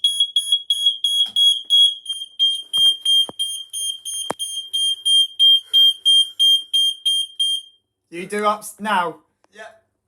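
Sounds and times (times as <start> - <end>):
smoke alarm beeping: 0.0 - 7.9.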